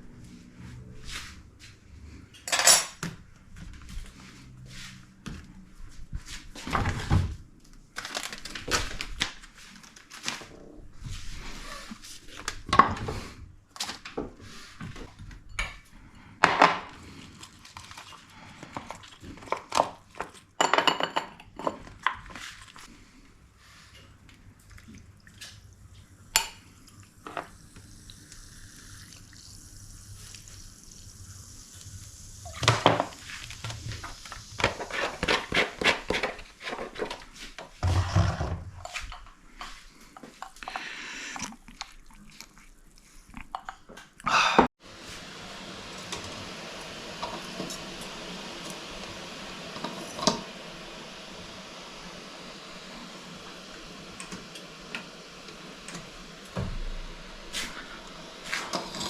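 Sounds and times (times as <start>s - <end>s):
pots and dishes clattering: 20.6s - 22.0s.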